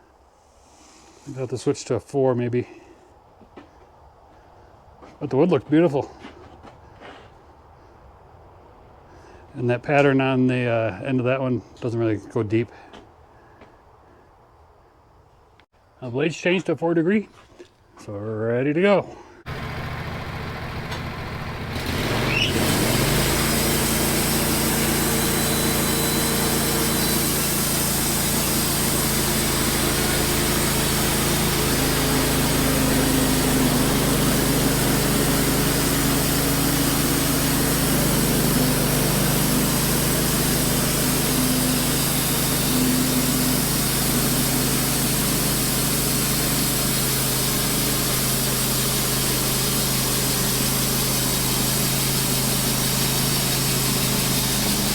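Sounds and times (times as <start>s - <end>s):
sawmill engine throttling up: 19.4s - 54.9s
band blade sawing log: 21.8s - 54.9s.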